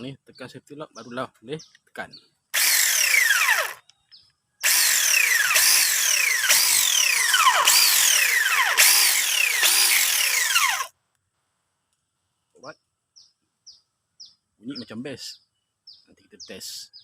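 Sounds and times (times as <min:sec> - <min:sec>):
mini chainsaw whining: 0:02.6 - 0:03.9, 0:04.6 - 0:10.9.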